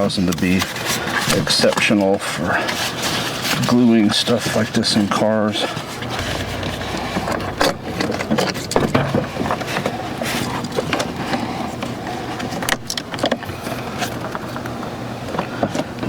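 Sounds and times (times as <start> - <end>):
low steady hum: 2.7 - 16.0
clicks knocks and rustling: 6.0 - 14.7.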